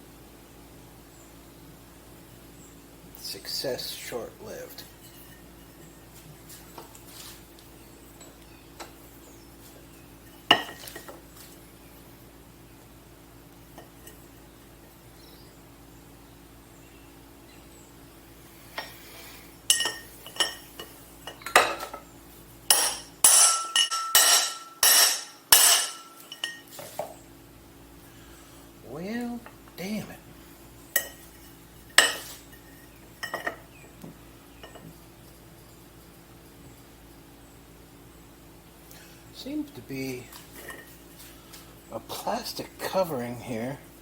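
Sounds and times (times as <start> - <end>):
faint steady hum: 0.0 - 44.0
metal tools clinking: 19.7 - 22.0, 22.7 - 27.0, 31.0 - 33.6
sharp metallic strikes: 22.7 - 26.2.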